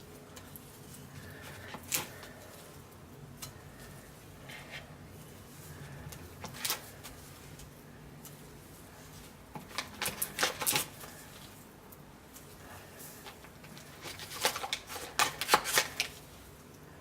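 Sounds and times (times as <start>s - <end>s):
utensil scraping lard: 0.5s - 11.6s.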